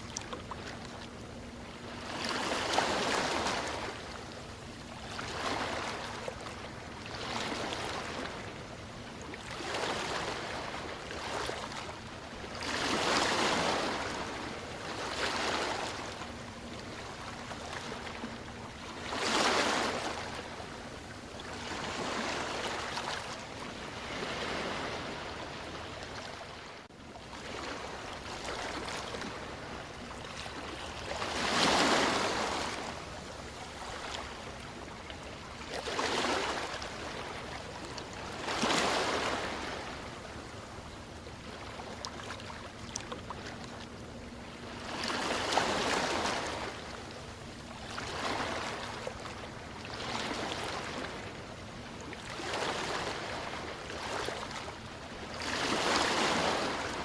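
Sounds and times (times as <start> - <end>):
ocean waves washing in: 21.5 - 26.8.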